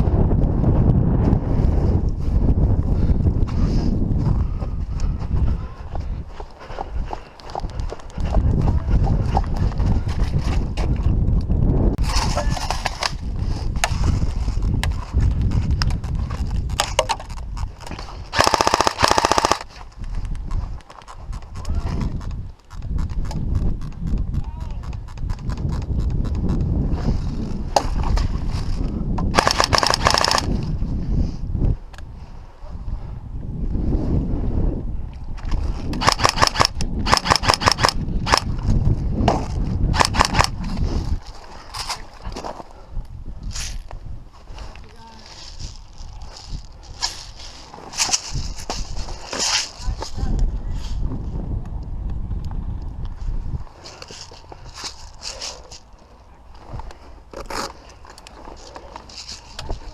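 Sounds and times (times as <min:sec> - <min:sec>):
airsoft gun full-auto burst: 0:18.3 - 0:19.7, 0:29.3 - 0:30.5, 0:36.0 - 0:38.4, 0:39.9 - 0:40.5.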